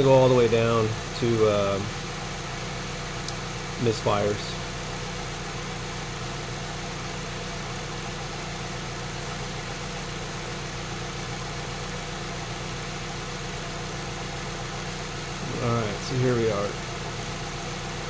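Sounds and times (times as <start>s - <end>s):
car engine idling: 0.0s - 18.0s.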